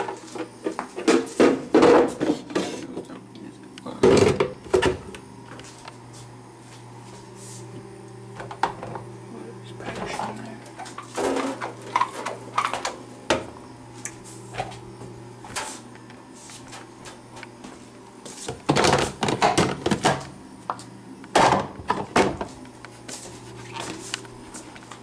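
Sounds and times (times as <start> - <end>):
steady low hum: 0.0 - 25.0
objects knocking and clattering: 18.7 - 20.3.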